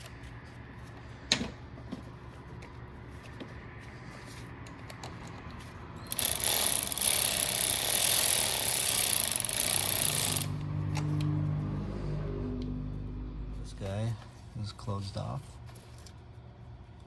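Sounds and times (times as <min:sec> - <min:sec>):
power tool running: 0:06.1 - 0:11.3.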